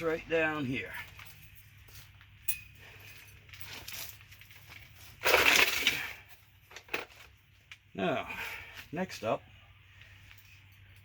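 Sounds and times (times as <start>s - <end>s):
light metal clink: 2.4s - 3.6s.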